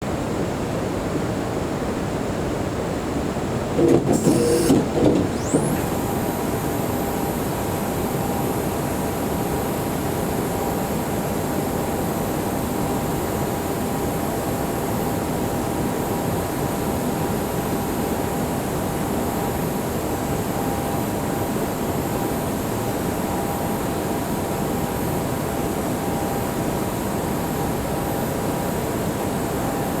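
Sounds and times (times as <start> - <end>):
high whining spindle: 3.8 - 7.7
cnc machine running: 3.8 - 21.3.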